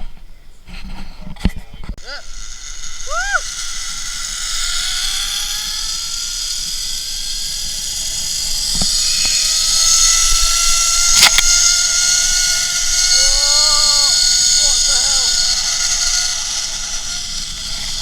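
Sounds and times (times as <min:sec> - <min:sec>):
high steady hiss: 0:01.7 - 0:18.0
motor whine rising in pitch: 0:02.0 - 0:18.0
sharp click: 0:10.4 - 0:11.6.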